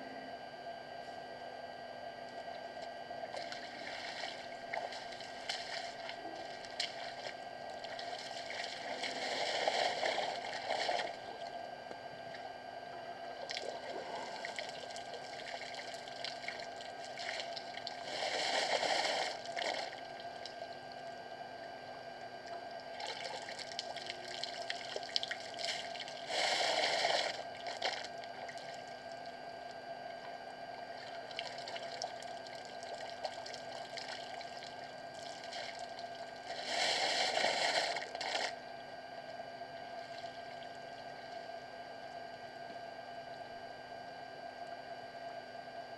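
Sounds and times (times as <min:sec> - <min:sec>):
elephant squirting water: 0:18.0 - 0:19.9, 0:36.5 - 0:38.5.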